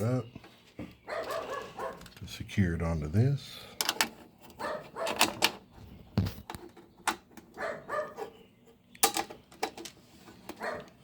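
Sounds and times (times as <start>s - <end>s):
metal hardware clicking and clattering: 3.8s - 5.6s, 9.0s - 10.7s.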